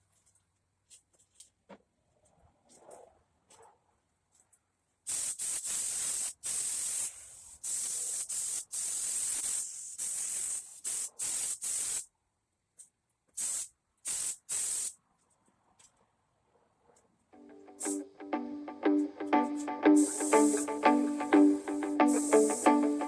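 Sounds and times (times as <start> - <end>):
paint spray hissing: 5.1 - 12.1, 13.4 - 15.0.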